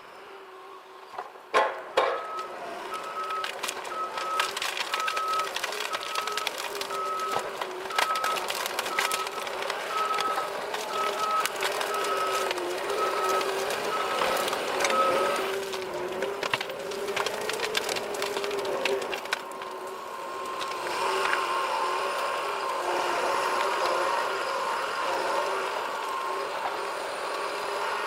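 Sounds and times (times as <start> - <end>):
sharp knocks and cracks: 1.5 - 2.3, 3.0 - 19.8
reversing alarm beeping: 2.1 - 15.5
diesel engine running: 2.3 - 28.0.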